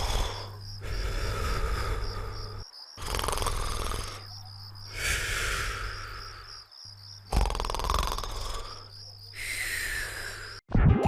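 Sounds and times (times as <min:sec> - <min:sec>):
cartoon snoring: 0:00.0 - 0:06.6, 0:07.2 - 0:10.6.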